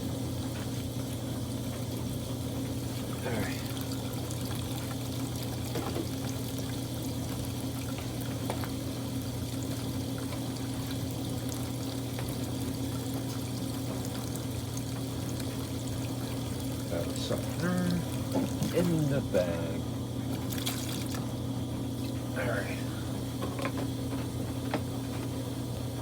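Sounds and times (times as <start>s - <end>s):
washing machine motor hum: 0.0s - 26.0s
water splashing in tub: 2.6s - 22.3s.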